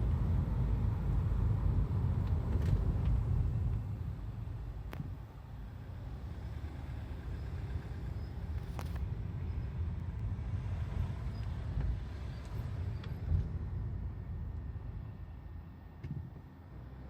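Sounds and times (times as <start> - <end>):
car engine low rumble: 0.0 - 17.0.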